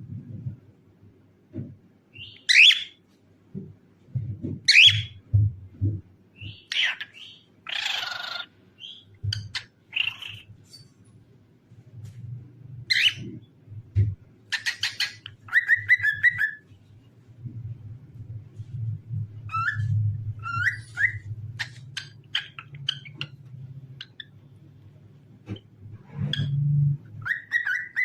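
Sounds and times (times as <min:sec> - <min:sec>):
steady low hum: 0:00.0 - 0:02.1, 0:16.6 - 0:27.3
cockatiel whistling and chirping: 0:02.2 - 0:02.9, 0:04.7 - 0:05.2, 0:12.9 - 0:13.3, 0:14.5 - 0:16.6, 0:19.5 - 0:23.3, 0:27.2 - 0:28.0.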